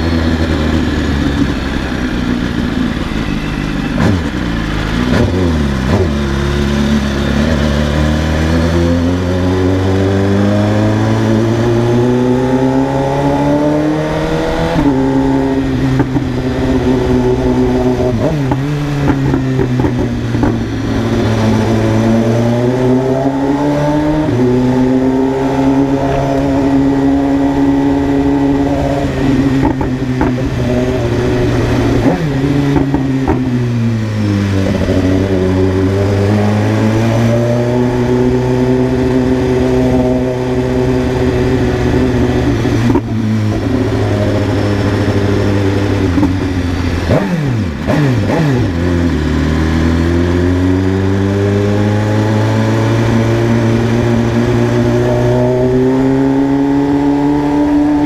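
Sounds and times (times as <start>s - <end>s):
motorcycle engine revving through gears: 0.0s - 58.0s.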